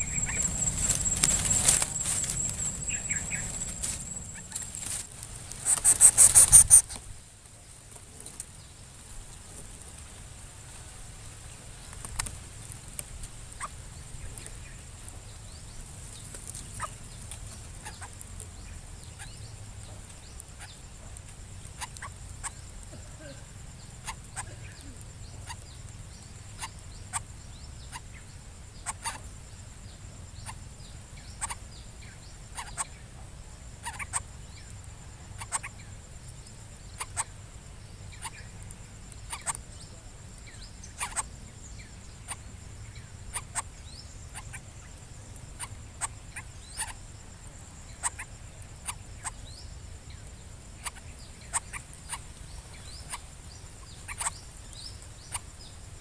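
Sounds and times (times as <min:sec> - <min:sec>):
high-pitched insect drone: 0:00.0 - 0:07.0
low background rumble: 0:00.0 - 0:07.8
sharp clicks: 0:03.8 - 0:07.0.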